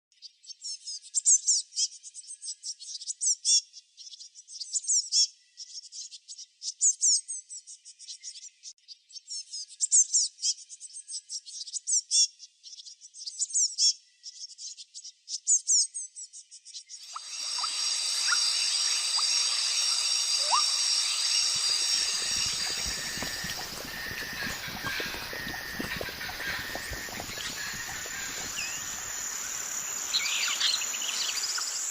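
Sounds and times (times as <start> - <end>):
small birds chirping: 0.2 - 31.9
insect chorus: 17.0 - 31.9
short rising chirps: 17.0 - 31.9
low crackling rustling: 19.1 - 30.2.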